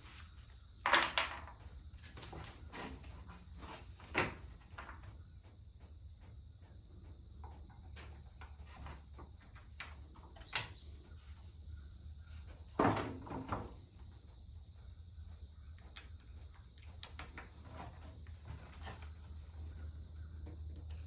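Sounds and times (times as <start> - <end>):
clatter of objects: 0.0 - 5.2
objects knocking and clicking: 0.0 - 5.2.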